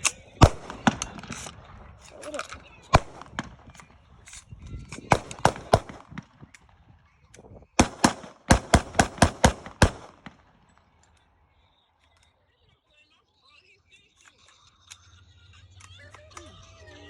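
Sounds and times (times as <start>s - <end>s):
gunshots: 0.0s - 6.8s, 7.8s - 10.9s.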